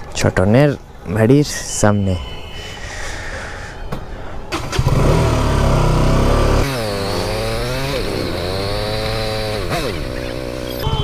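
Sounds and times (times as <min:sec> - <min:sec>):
motorcycle engine revving: 0:04.5 - 0:11.0.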